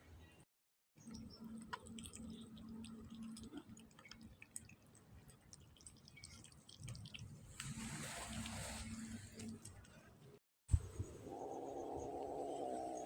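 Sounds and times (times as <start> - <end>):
cat chewing and licking: 1.4 - 10.1.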